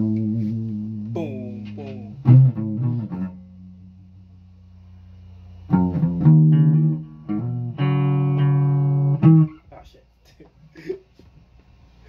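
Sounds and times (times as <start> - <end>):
guitar plucked notes: 0.0 - 4.6, 5.2 - 9.6.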